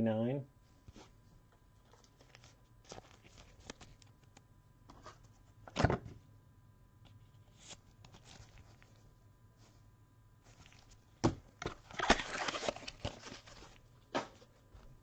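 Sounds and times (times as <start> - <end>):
cards rustling and scraping: 1.8 - 4.3, 4.9 - 6.0, 7.0 - 9.8, 10.4 - 14.6.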